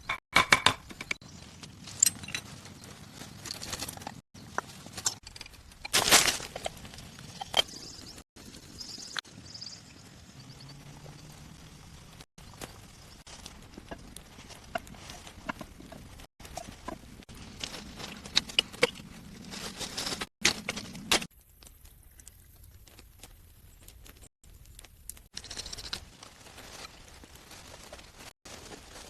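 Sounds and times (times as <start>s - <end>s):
knocks and clicks of wood and tools: 0.0s - 1.2s
rustling: 12.4s - 29.0s.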